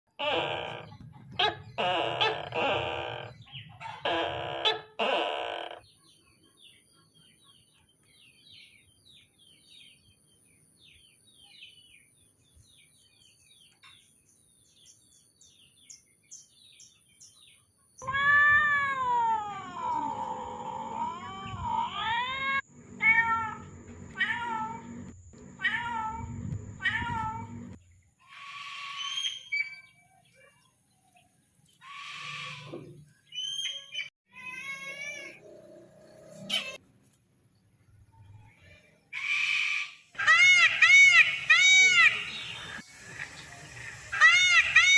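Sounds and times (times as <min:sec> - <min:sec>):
loud gliding animal calls: 0:00.2 - 0:05.8, 0:18.0 - 0:29.6.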